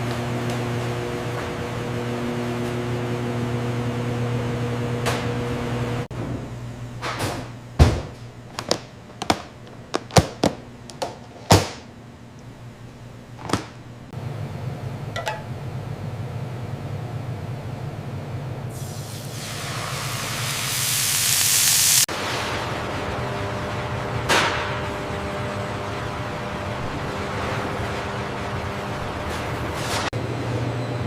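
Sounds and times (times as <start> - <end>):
factory machinery humming: 0.0 - 20.5, 22.1 - 31.0
noisy machine hum: 0.0 - 31.0
sharp clanks and clicks: 15.2 - 15.5.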